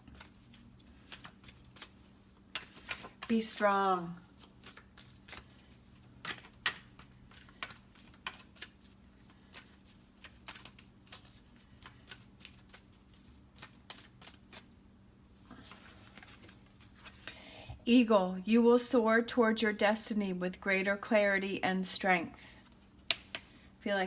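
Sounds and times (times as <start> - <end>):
cards being shuffled by hand: 0.0 - 14.8, 15.4 - 17.3, 22.6 - 23.6.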